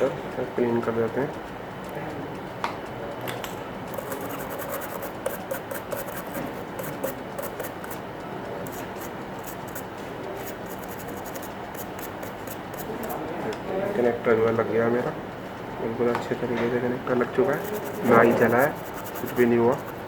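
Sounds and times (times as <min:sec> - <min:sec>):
scratchy scrubbing on circuit board: 0:03.9 - 0:08.0, 0:08.6 - 0:13.2, 0:17.4 - 0:20.0.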